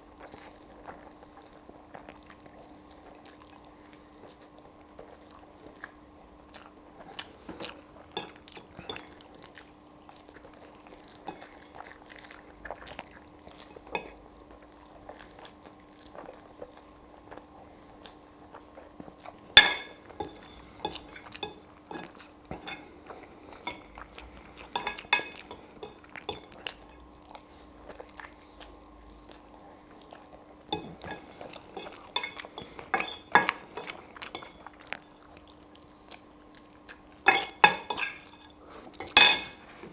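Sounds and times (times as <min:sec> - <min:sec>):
person chewing: 0:10.3 - 0:37.2
fork clinking on a plate: 0:19.6 - 0:22.9, 0:23.6 - 0:23.9, 0:24.6 - 0:27.0, 0:30.7 - 0:34.6, 0:37.3 - 0:39.6.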